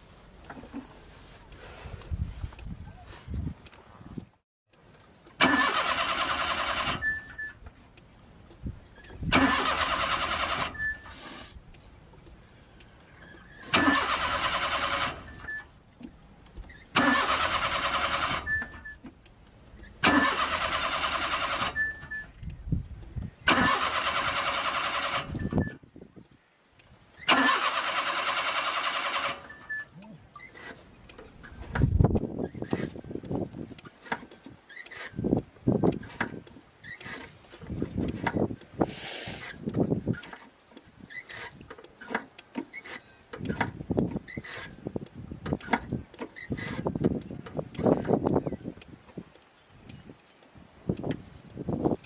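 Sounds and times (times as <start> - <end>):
car starter cranking engine: 4.8 - 7.6, 8.9 - 12.3, 13.2 - 25.8, 27.2 - 48.8.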